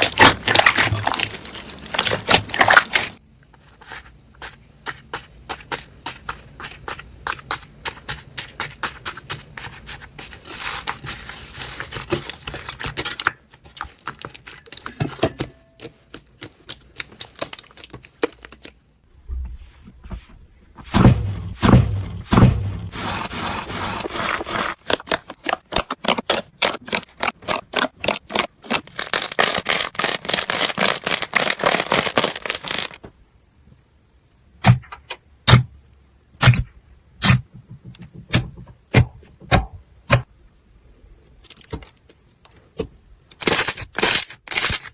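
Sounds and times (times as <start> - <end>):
slime clicking and crackling: 0.0 - 3.2, 15.8 - 18.8, 24.8 - 33.0.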